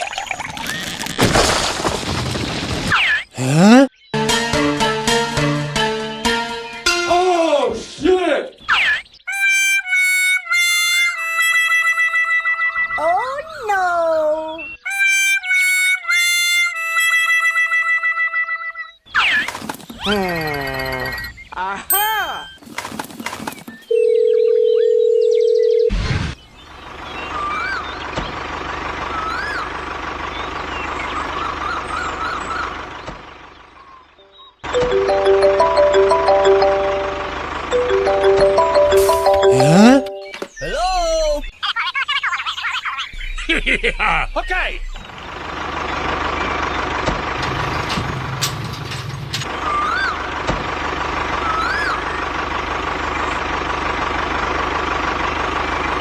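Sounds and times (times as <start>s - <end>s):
small engine idling: 26.6s - 33.9s, 45.0s - 56.0s
rising-and-falling chirps: 34.7s - 40.5s
electronic beep tone: 34.8s - 40.4s.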